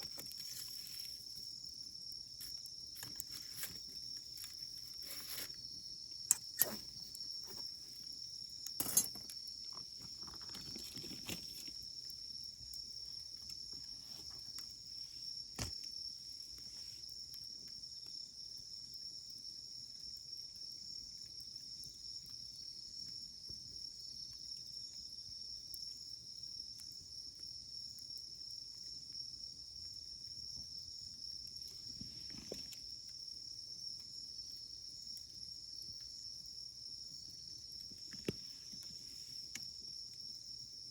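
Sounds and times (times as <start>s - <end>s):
sharp pops from burning logs: 0.0s - 14.8s
wood fire crackling: 0.0s - 15.9s
crickets chirring: 0.0s - 40.9s.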